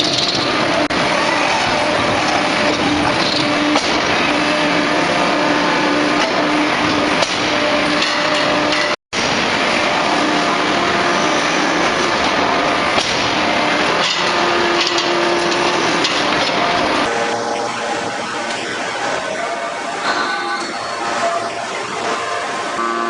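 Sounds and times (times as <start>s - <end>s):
forging press industrial noise: 0.0s - 23.0s
humming tone: 13.5s - 23.0s.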